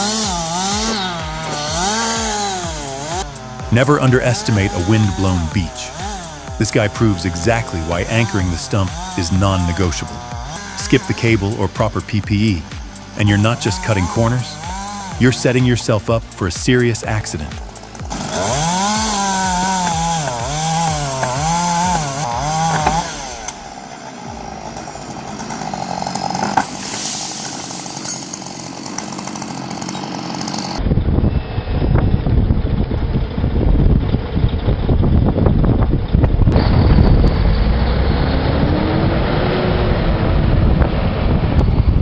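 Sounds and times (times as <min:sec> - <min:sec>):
chainsaw running: 0:00.0 - 0:30.8
heavy low rumble: 0:01.1 - 0:24.8, 0:30.8 - 0:42.0.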